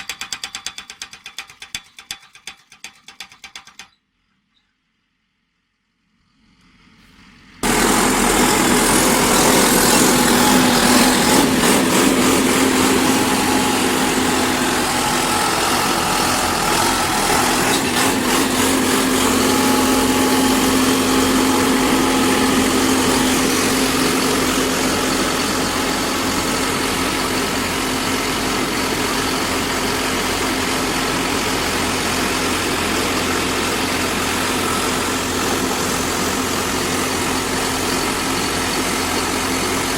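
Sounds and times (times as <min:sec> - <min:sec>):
pile driver engine running: 0:07.4 - 0:39.9.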